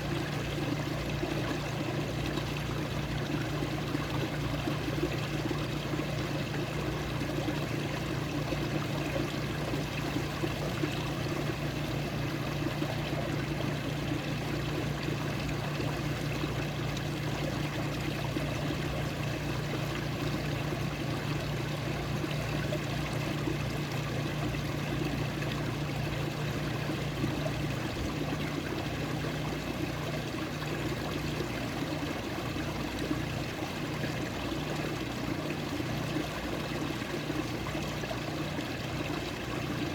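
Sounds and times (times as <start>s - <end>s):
running water trickling: 0.0s - 39.9s.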